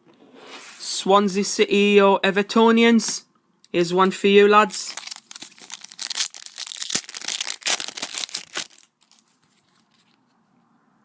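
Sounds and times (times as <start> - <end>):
wrapper tearing and crinkling: 4.8 - 10.2.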